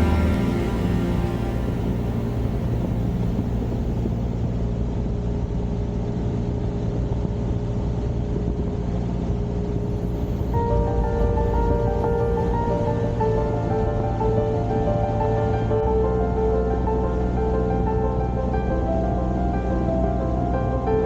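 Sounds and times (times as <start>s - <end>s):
airplane engine and propeller drone: 0.0s - 5.2s.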